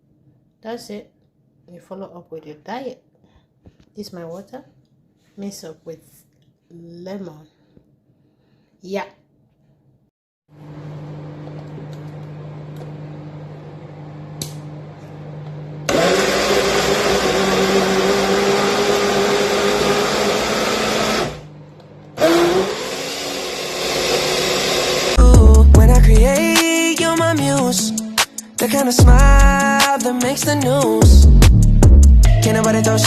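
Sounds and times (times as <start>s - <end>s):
electric blender running: 10.6s - 25.2s.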